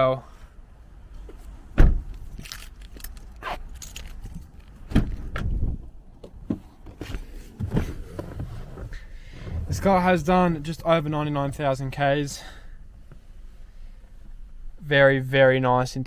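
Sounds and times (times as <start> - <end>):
knocks and thumps inside a car: 1.8 - 2.2, 4.9 - 11.1.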